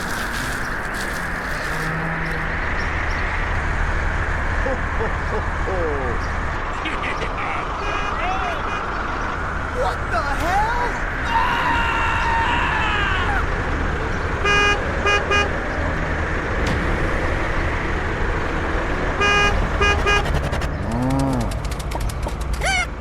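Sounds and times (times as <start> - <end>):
vehicle horn honking: 7.8 - 8.8, 14.4 - 15.6, 19.2 - 20.5.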